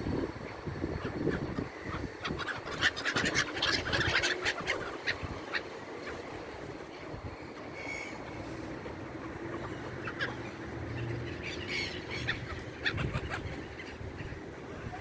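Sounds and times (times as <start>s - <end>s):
seabirds calling: 0.0s - 15.0s.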